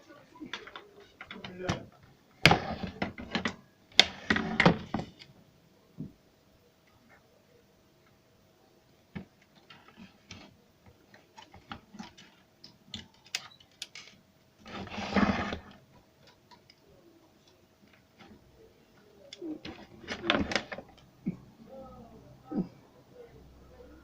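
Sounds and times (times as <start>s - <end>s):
clicks of small mechanical parts: 12.1s - 14.2s
rustling scrape: 14.6s - 15.7s.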